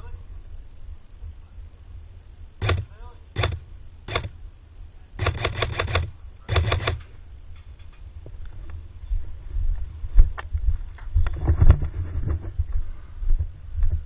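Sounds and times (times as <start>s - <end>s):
airsoft gun shots: 2.6s - 4.4s, 5.2s - 7.2s.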